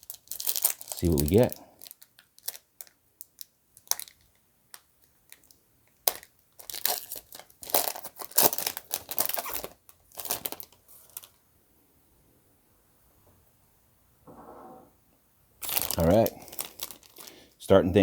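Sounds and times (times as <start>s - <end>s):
wrapper crinkling and tearing: 0.0s - 11.4s, 15.6s - 17.6s.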